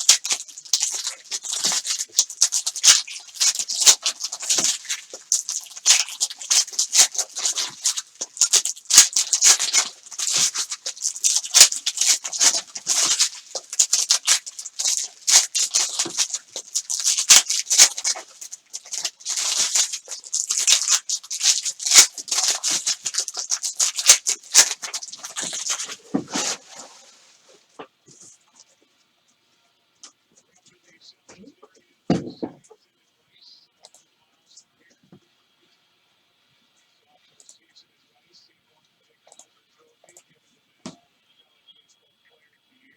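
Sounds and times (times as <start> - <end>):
foil wrappers tearing and crinkling: 0.0 - 27.8.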